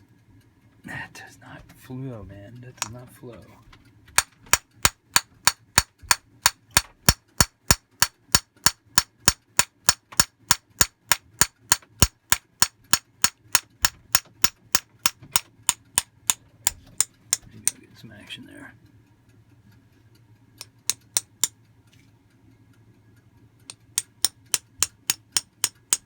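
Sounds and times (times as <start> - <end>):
metallic tapping: 2.5 - 3.6, 4.2 - 17.8, 20.6 - 21.6, 23.6 - 26.0.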